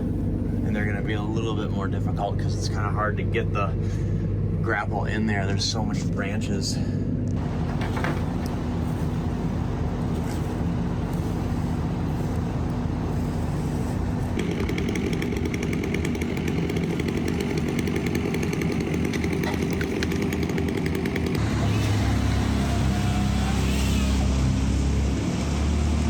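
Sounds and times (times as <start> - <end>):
heavy machine engine running: 6.8 - 26.0
chainsaw cutting: 7.4 - 26.0.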